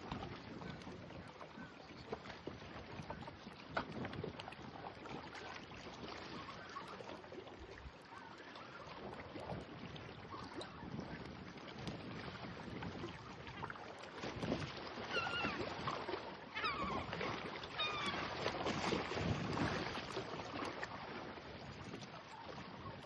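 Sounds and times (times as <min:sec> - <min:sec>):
wind: 0:00.0 - 0:23.0
gulls calling: 0:15.1 - 0:18.4.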